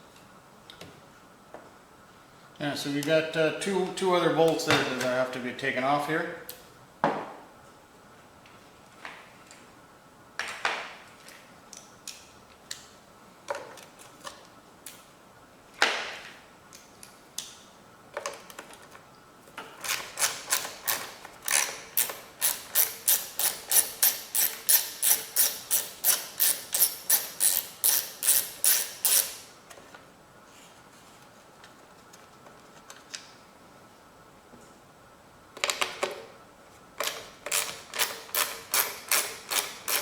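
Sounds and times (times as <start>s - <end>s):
ratchet wrench clicking: 20.2s - 29.4s, 37.5s - 40.0s.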